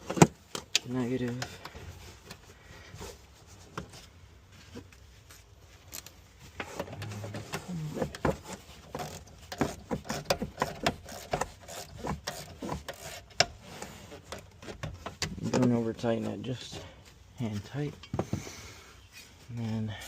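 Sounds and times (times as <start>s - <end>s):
wrench clicking and scraping: 5.9s - 15.4s.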